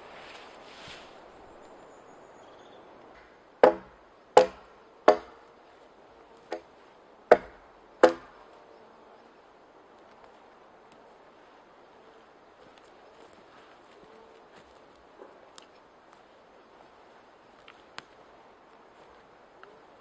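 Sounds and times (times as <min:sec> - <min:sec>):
axe chopping wood: 0:03.6 - 0:05.4, 0:06.5 - 0:06.7, 0:07.3 - 0:08.4.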